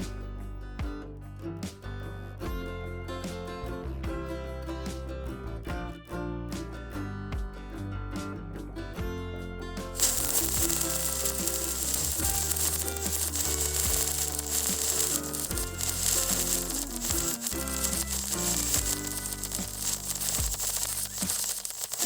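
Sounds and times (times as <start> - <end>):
guitar music: 0.0 - 22.0
welding arc crackling: 10.0 - 22.0.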